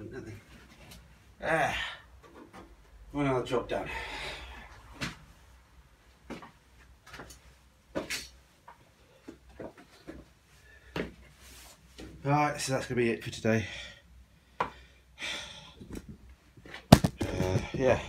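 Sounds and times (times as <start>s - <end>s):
car parts knocking and clunking: 16.9s - 18.0s.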